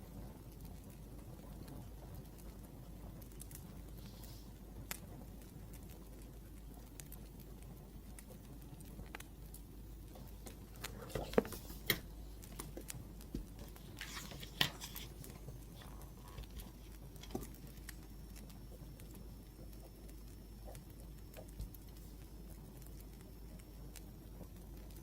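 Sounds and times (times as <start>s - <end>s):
wood fire crackling: 0.0s - 25.0s
fire pops and snaps: 0.5s - 25.0s.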